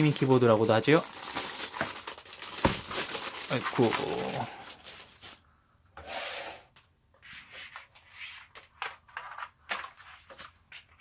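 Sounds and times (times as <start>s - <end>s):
packaging rustling: 0.0s - 5.4s.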